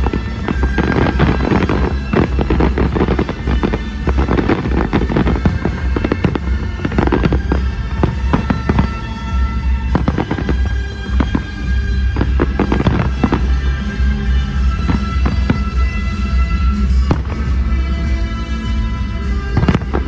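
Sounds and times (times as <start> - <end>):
fireworks bangs and crackles: 0.0 - 20.0
loud music: 0.0 - 20.0.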